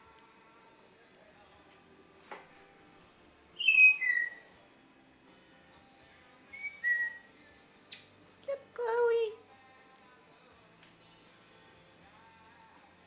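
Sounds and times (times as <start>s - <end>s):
parrot whistling: 3.6s - 4.5s, 6.5s - 7.3s.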